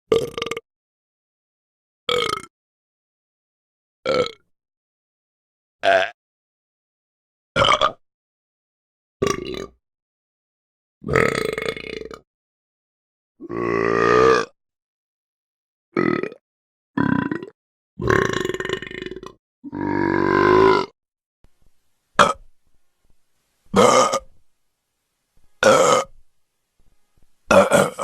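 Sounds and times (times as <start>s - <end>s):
short burps: 0.1s - 0.6s, 2.1s - 2.5s, 5.8s - 6.2s, 7.6s - 8.0s, 9.2s - 9.8s, 11.0s - 12.2s, 17.0s - 21.0s, 22.2s - 22.5s, 23.7s - 24.3s, 25.6s - 26.1s, 27.5s - 28.0s.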